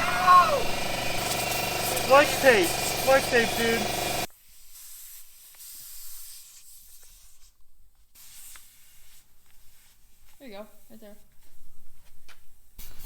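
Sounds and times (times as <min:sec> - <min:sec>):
aerosol spray can hissing: 0:00.0 - 0:07.2.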